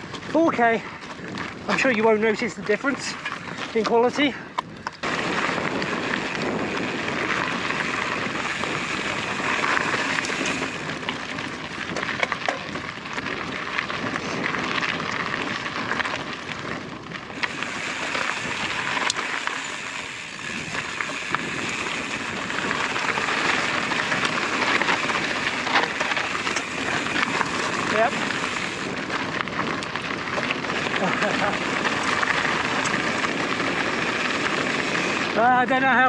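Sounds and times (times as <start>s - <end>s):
bike tyres crunching on gravel: 0.0s - 35.5s
bike clicks and rattles: 0.0s - 36.0s.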